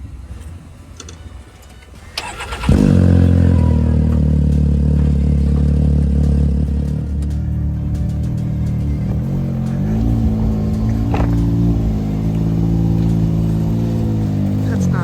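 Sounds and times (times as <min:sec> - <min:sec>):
race car engine starting and idling: 0:00.0 - 0:15.0.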